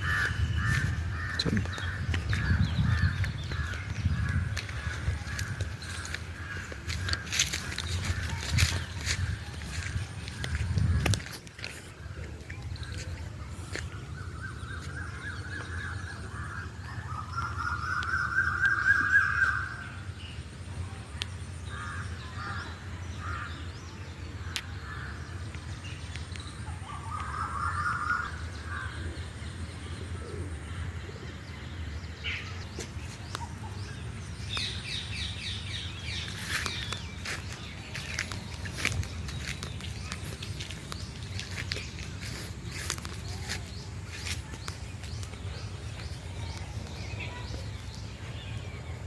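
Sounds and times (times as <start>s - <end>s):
wind rumble on microphone: 0.0s - 14.7s
birds harsh rasping calls: 0.0s - 20.5s, 21.4s - 49.0s.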